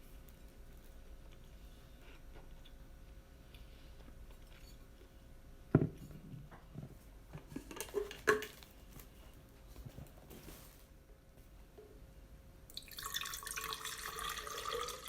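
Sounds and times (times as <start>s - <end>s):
tableware knocking on table: 5.7s - 6.1s.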